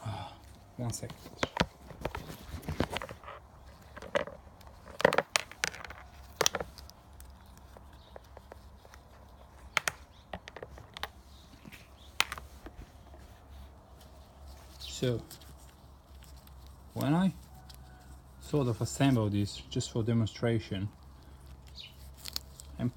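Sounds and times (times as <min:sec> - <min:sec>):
wires and small parts clicking: 0:00.8 - 0:12.8, 0:20.9 - 0:22.9.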